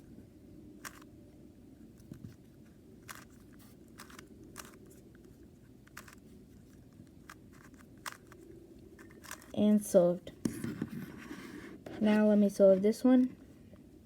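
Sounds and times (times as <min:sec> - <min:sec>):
puzzle cube plastic clicks: 0:00.8 - 0:01.1, 0:03.0 - 0:08.4, 0:09.0 - 0:09.6.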